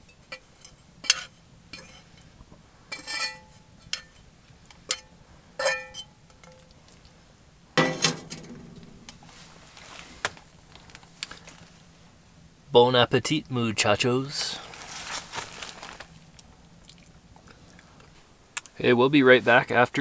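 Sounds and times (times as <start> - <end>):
metal utensils clinking on pots: 0.0 - 2.3, 2.9 - 6.7, 7.8 - 9.5.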